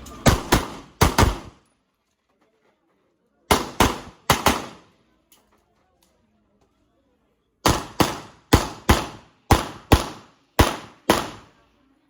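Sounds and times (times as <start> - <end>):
gunshots in quick pairs: 0.2 - 1.6, 3.5 - 4.9, 7.6 - 11.5.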